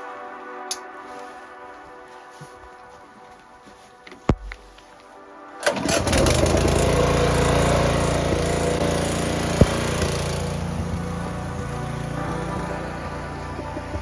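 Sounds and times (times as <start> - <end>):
pressure washer engine running: 5.7 - 14.0.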